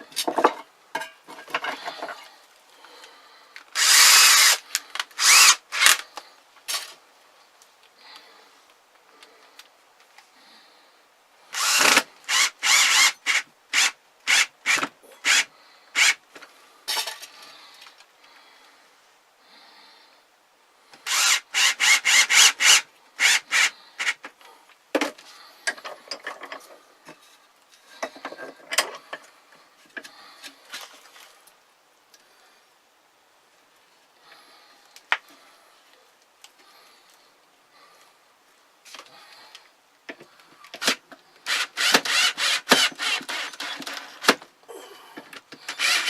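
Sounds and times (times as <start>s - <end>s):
hand tool rasping wood: 3.8s - 4.6s, 5.2s - 6.0s, 11.6s - 16.2s, 21.1s - 24.2s, 40.8s - 44.4s, 45.7s - 46.0s.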